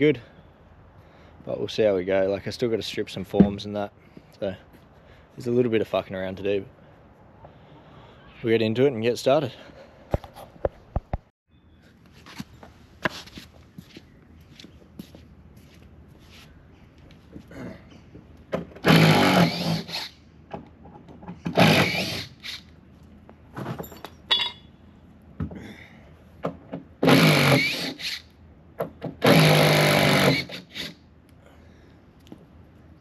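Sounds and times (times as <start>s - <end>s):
power drill running: 18.9s - 20.2s, 21.6s - 22.7s.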